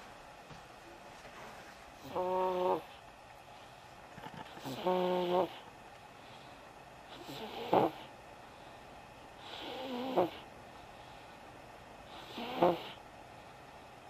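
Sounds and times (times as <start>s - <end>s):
baby snoring: 2.0s - 3.0s, 4.2s - 5.7s, 7.1s - 8.1s, 9.5s - 10.5s, 12.2s - 13.0s.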